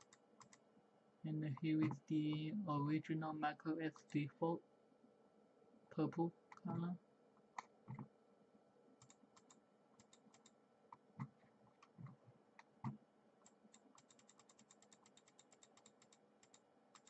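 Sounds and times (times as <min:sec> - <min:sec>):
keyboard and mouse clicking: 0:00.0 - 0:00.6, 0:01.6 - 0:02.4, 0:07.6 - 0:08.1, 0:09.0 - 0:17.0.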